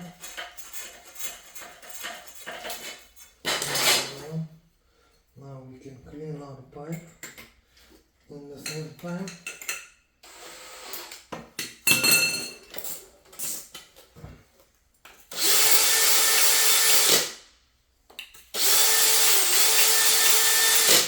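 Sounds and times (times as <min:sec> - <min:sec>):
small electric power tool running: 0:15.4 - 0:17.3, 0:18.6 - 0:21.0.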